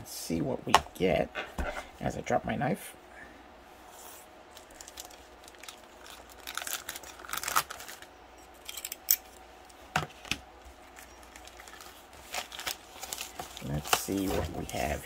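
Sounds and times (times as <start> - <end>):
plastic packaging crinkling and tearing: 4.5 - 8.1, 10.8 - 15.0.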